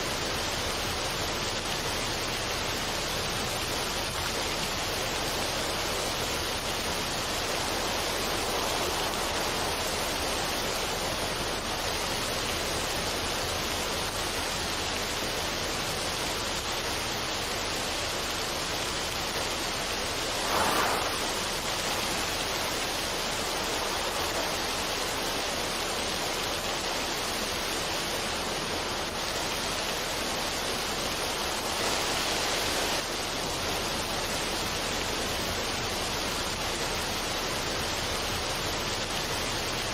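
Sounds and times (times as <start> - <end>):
water rushing over rocks: 0.0 - 36.8
water splash: 20.0 - 26.6.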